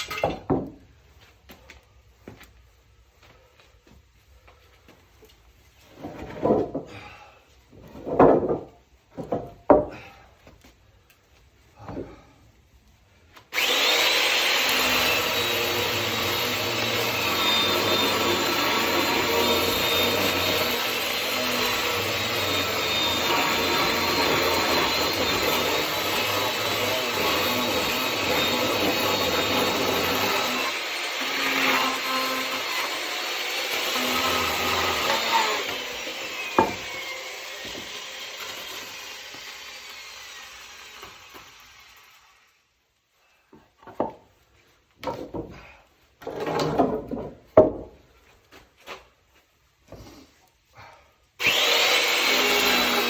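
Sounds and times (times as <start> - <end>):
chainsaw cutting logs: 13.4 - 42.7, 51.4 - 53.0.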